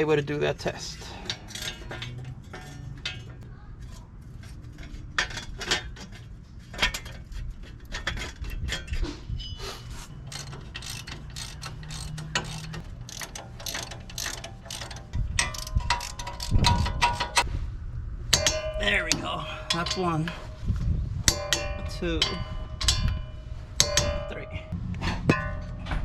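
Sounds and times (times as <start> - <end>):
ratchet wrench clicking: 1.2 - 3.2, 10.2 - 17.4.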